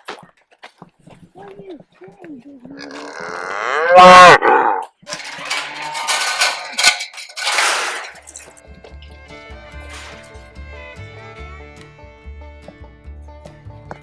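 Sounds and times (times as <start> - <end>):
cow mooing: 2.8 - 6.0
sharp metallic clanks: 5.1 - 8.6
background music: 8.2 - 14.0.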